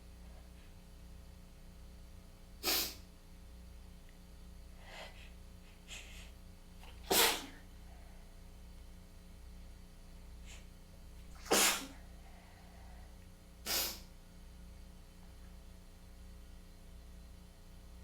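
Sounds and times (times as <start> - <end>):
person sneezing: 2.6 - 3.1, 6.9 - 7.6, 11.4 - 12.0, 13.7 - 14.1
quick breaths: 4.8 - 6.4.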